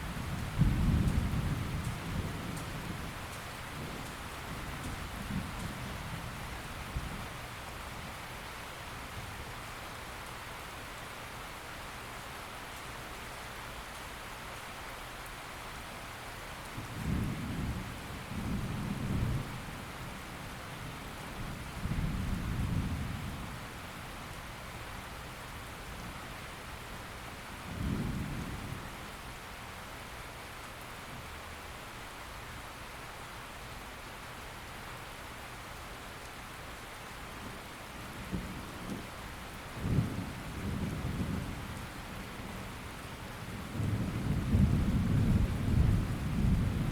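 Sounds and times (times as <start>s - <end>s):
thunder rumbling: 43.6s - 46.9s.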